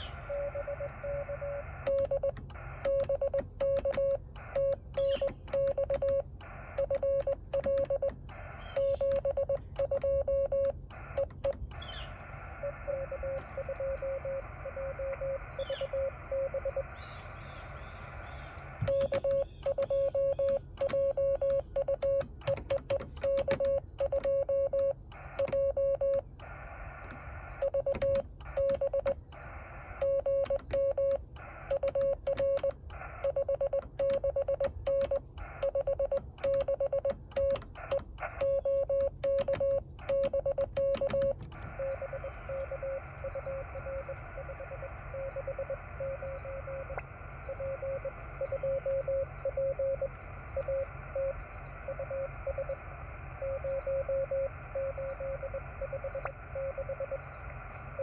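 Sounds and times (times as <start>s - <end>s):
morse code tone: 0.0s - 17.0s, 18.0s - 26.6s, 27.5s - 58.0s
faint fast morse signal: 0.0s - 58.0s
receiver hiss: 0.0s - 58.0s
keying clicks: 1.7s - 11.9s, 18.5s - 45.0s.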